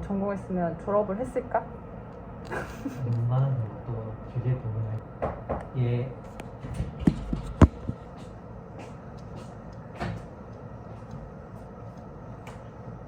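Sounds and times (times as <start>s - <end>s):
steady low hum: 0.0s - 13.0s
sharp clicks and knocks: 6.8s - 8.0s.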